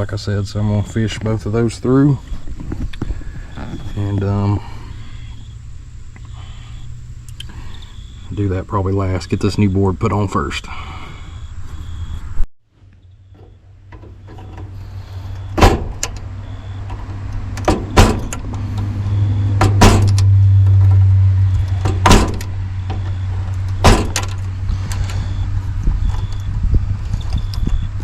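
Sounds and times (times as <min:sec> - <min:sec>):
low steady hum: 0:00.0 - 0:28.0
sharp clicks and snaps: 0:07.2 - 0:07.9.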